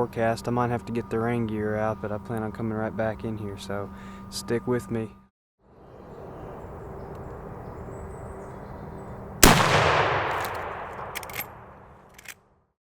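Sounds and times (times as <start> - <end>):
rifle shot echoing: 9.4 - 12.0.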